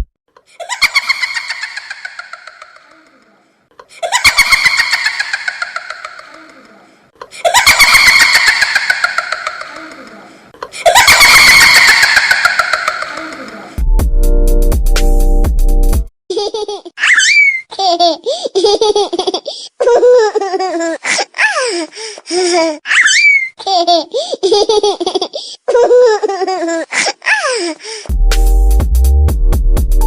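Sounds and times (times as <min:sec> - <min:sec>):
electronic beat: 0:13.8 - 0:16.1, 0:28.1 - 0:30.0.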